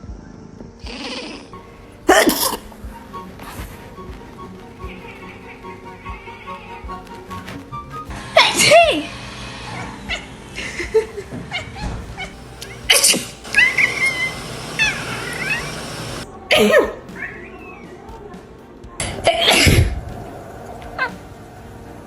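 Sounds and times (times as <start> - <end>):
person sneezing: 2.1 - 2.7, 16.5 - 17.0.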